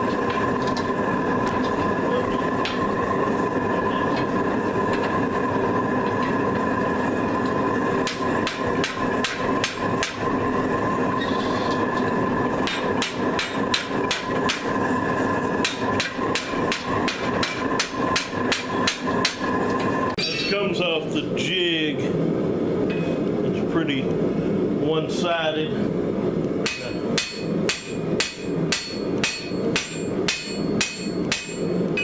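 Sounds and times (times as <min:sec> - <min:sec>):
hammer striking hot steel: 0:00.0 - 0:03.4, 0:04.0 - 0:10.4, 0:11.0 - 0:20.8, 0:26.6 - 0:32.0
steady machine hum: 0:00.0 - 0:32.0.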